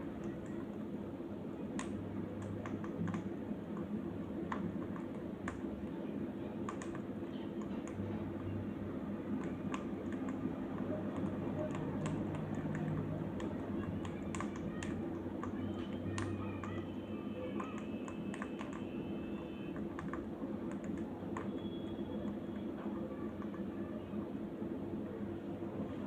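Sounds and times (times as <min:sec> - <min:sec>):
steady low hum: 0:00.0 - 0:26.0
bird beaks clicking and tapping: 0:09.4 - 0:16.8.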